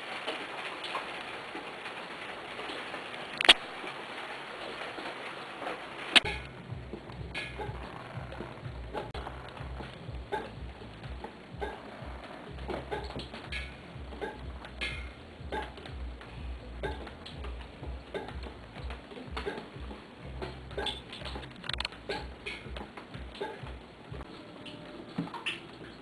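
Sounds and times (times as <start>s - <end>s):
water dripping into containers: 0.0s - 26.0s
low rumble: 6.3s - 18.9s.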